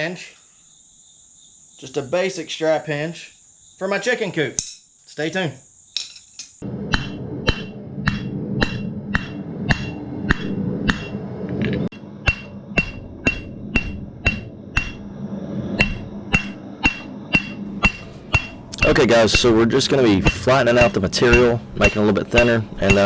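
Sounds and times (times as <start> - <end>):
low hum: 6.6 - 23.0
hammer striking steel on anvil: 6.9 - 11.2, 12.2 - 15.1, 15.8 - 23.0.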